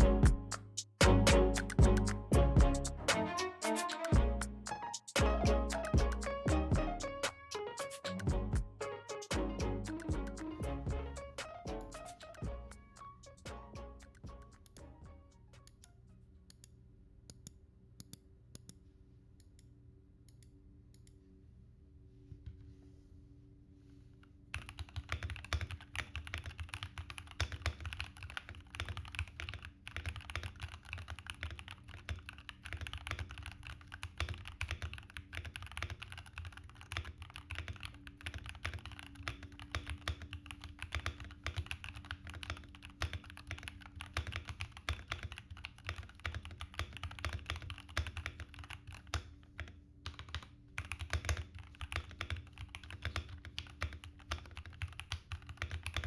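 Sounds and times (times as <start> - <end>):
fast typing on mechanical keyboard: 24.5 - 56.0.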